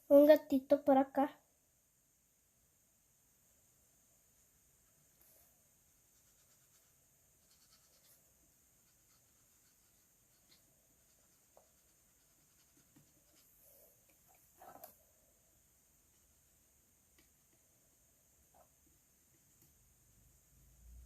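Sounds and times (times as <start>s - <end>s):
marker scratching on surface: 6.0s - 8.2s, 8.8s - 13.6s.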